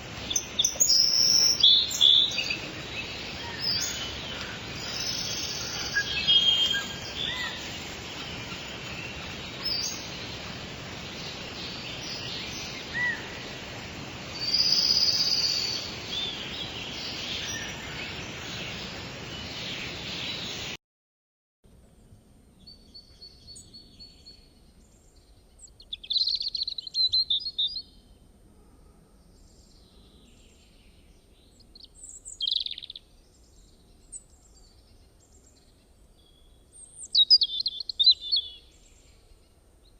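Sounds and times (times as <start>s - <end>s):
rain hissing: 0.0s - 20.8s
songbirds chirping: 0.0s - 20.8s, 22.0s - 39.9s
bird trill: 0.2s - 10.5s, 14.4s - 18.3s.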